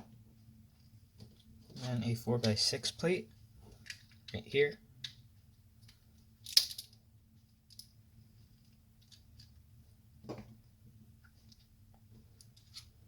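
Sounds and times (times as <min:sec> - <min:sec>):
faint steady hum: 0:00.0 - 0:13.0
plastic pieces clicking together: 0:05.8 - 0:07.0.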